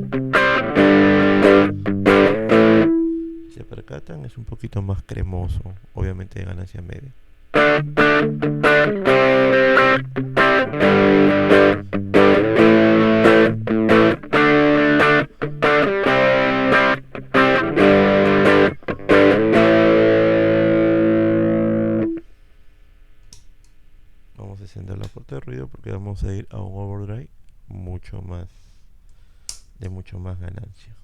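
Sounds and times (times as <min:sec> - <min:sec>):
distorted electric guitar strumming: 0:00.0 - 0:03.9, 0:07.5 - 0:22.2.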